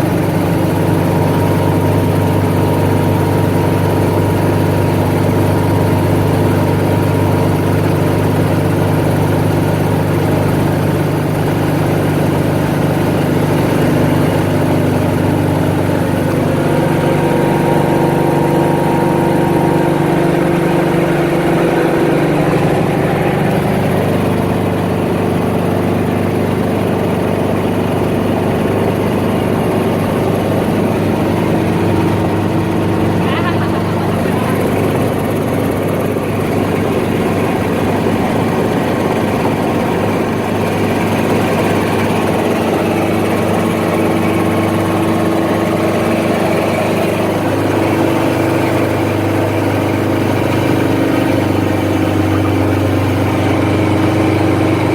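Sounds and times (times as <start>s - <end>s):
helicopter engine and rotor: 0.0s - 54.9s.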